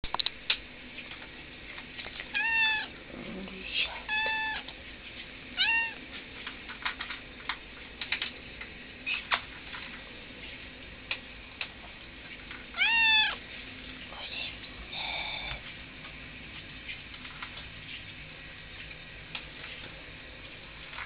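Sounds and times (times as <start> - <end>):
cat meowing: 2.3 - 2.9, 4.0 - 4.6, 5.6 - 6.0, 12.7 - 13.4.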